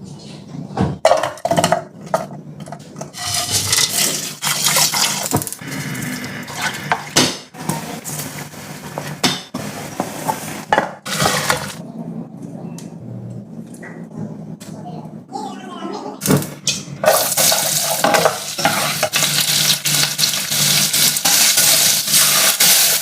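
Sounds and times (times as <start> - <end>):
metal utensils clattering on pans: 1.0 - 5.6, 8.9 - 11.8, 16.3 - 23.0
stirring: 3.0 - 7.2, 7.8 - 11.8, 17.0 - 22.0.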